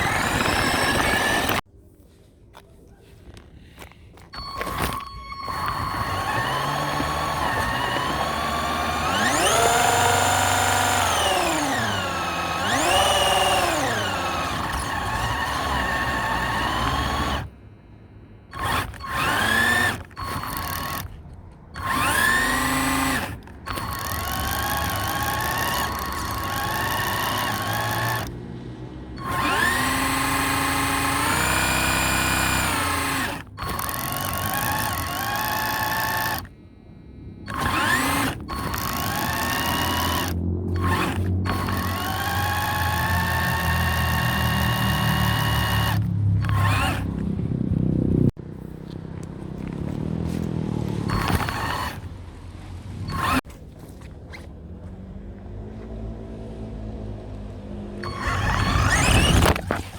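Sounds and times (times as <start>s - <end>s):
electric motor whining: 0.0s - 1.7s, 4.4s - 17.6s, 18.5s - 21.2s, 21.8s - 28.5s, 29.1s - 36.6s, 37.4s - 47.4s, 49.6s - 52.2s, 53.0s - 53.5s, 58.0s - 59.9s.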